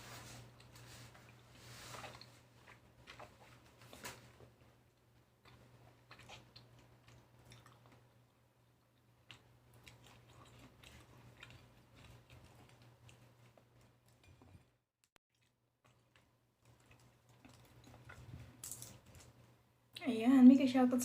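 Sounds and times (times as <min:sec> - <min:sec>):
chewing with wet mouth clicks: 0:05.4 - 0:14.2, 0:15.3 - 0:18.4.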